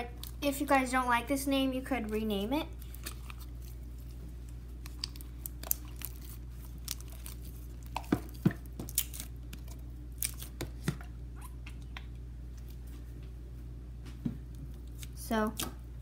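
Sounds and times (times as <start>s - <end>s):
slime clicking and popping: 4.8s - 10.7s.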